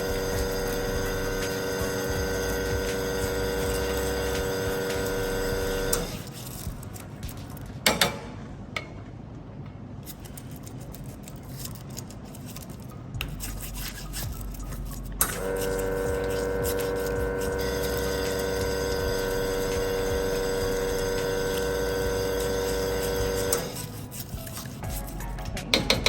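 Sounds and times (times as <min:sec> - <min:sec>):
espresso machine pump humming: 0:00.0 - 0:06.4, 0:15.2 - 0:24.0.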